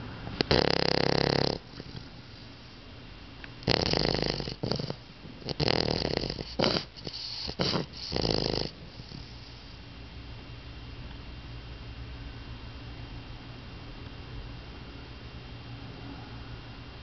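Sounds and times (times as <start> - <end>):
puppy snoring loudly: 0.4 - 2.4, 3.6 - 9.8.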